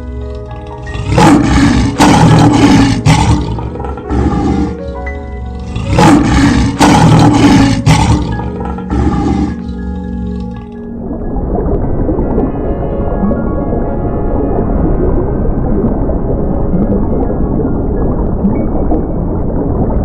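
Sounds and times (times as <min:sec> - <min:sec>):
soft background music: 0:00.0 - 0:20.0
big cat roaring: 0:00.9 - 0:04.8, 0:05.6 - 0:10.5.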